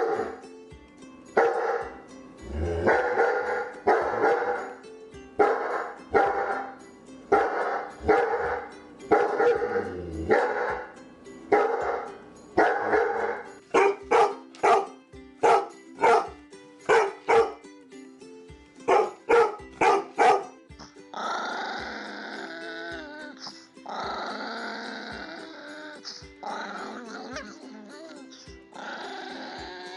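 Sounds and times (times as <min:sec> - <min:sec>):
dog barking loudly: 0:01.4 - 0:02.0, 0:02.9 - 0:04.7, 0:05.4 - 0:10.9, 0:11.5 - 0:17.6, 0:18.9 - 0:20.6.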